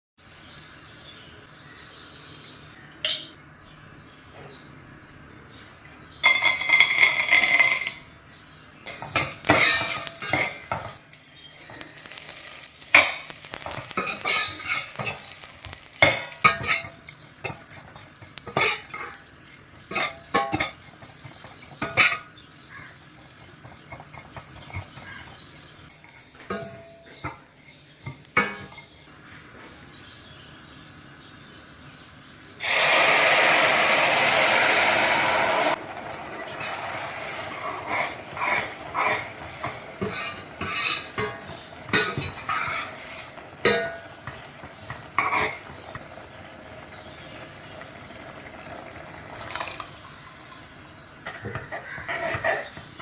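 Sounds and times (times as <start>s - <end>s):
metal utensils clinking on pots: 3.0s - 3.4s, 6.2s - 8.1s, 8.8s - 29.5s, 35.4s - 47.2s, 49.3s - 50.6s.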